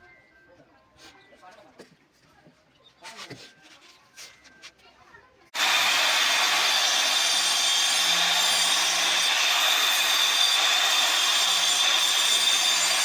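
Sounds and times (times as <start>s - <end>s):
power tool whining: 5.6s - 13.0s.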